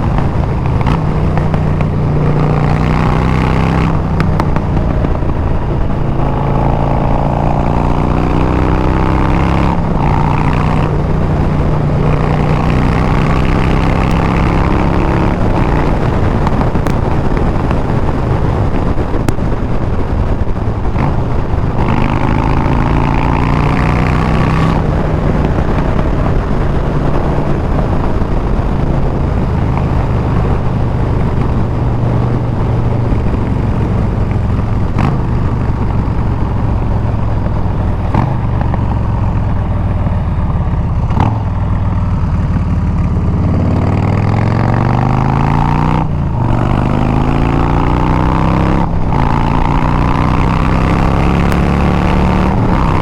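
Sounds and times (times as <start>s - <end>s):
motorcycle engine accelerating: 0.0s - 53.0s.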